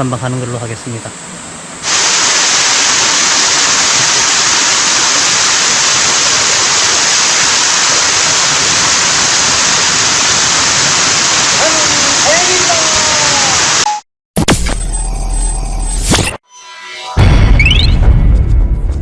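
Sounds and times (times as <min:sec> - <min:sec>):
mountain stream rushing: 0:01.8 - 0:13.8.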